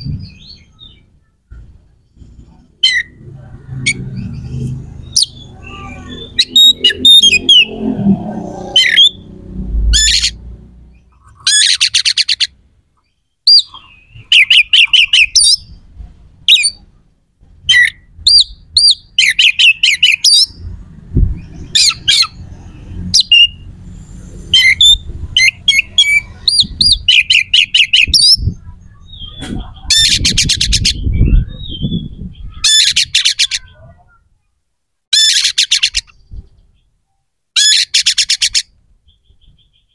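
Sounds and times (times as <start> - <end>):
bird singing: 0.0 - 15.8, 17.7 - 20.7, 24.5 - 34.2, 35.1 - 39.9
low rumble: 1.5 - 11.1.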